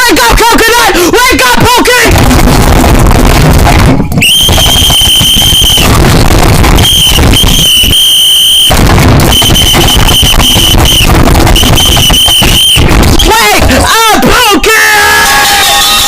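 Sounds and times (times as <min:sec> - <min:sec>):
loud harsh din: 0:00.0 - 0:16.0
shrill alarm tone blasts: 0:04.2 - 0:13.6, 0:15.0 - 0:16.0.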